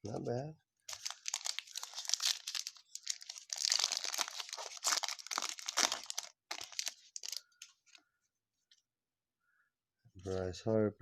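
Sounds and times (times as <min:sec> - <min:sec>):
card pack rustling: 0:00.9 - 0:08.0.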